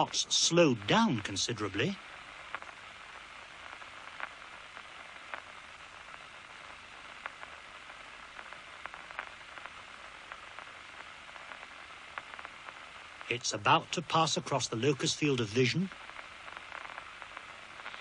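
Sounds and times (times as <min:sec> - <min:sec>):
old recording hiss: 0:00.0 - 0:18.0
faint clicks: 0:02.5 - 0:02.8.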